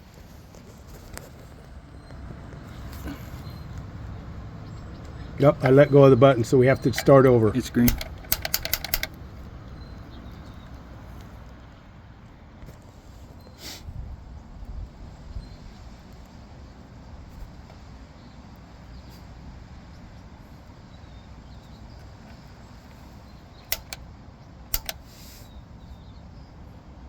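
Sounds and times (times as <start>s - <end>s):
piezo igniter clicks: 2.9s - 11.4s, 21.9s - 24.1s, 24.7s - 25.3s.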